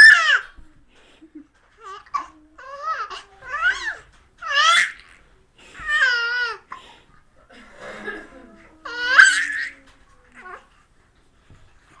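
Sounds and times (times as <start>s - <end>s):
baby squealing: 2.1s - 5.1s, 8.9s - 9.8s.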